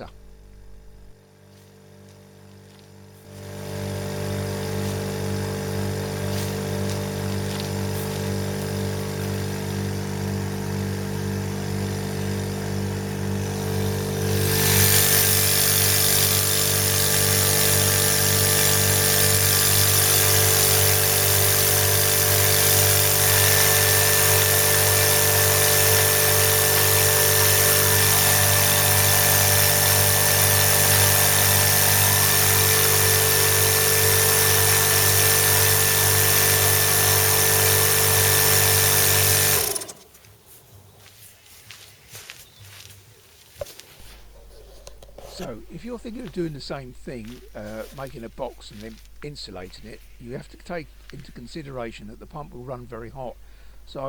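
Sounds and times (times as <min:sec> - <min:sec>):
electric air compressor running: 0:00.0 - 0:40.2, 0:44.0 - 0:54.0.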